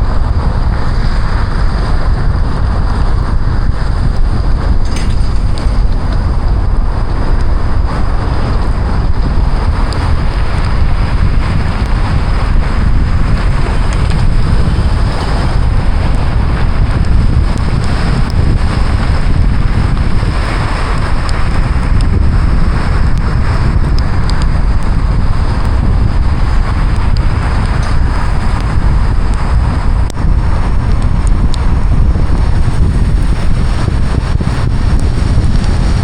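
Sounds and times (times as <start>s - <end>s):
deep rumble: 0.0s - 36.0s
rain and wet tyres rushing: 0.0s - 36.0s.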